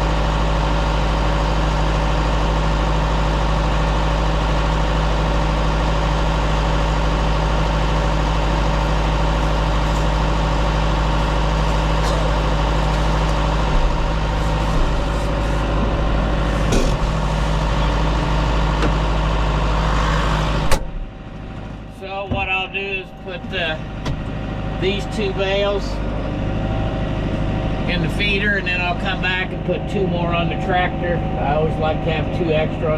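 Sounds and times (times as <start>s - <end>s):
tractor engine droning: 0.0s - 32.9s
knocks and rattles: 16.6s - 17.4s.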